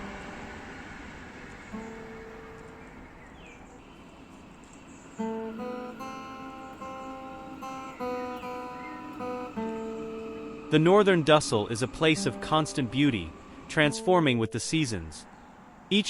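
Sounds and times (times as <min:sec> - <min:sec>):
acoustic guitar picking: 0:01.7 - 0:03.0, 0:05.2 - 0:10.6.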